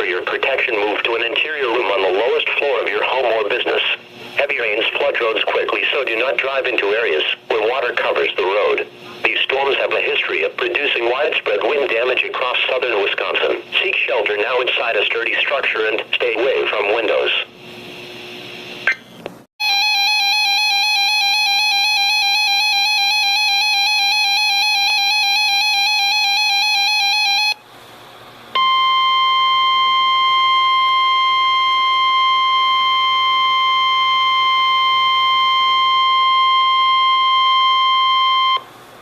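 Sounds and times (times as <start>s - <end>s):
steady warning alarm tone: 19.6s - 27.6s, 28.6s - 38.7s.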